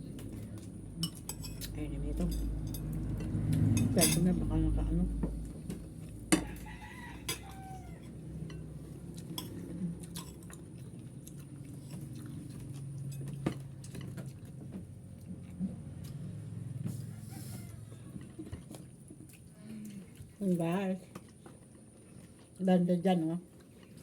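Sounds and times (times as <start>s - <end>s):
cutlery clinking against plates: 1.0s - 4.3s, 7.2s - 7.6s
chewing: 5.4s - 22.7s, 23.4s - 24.0s.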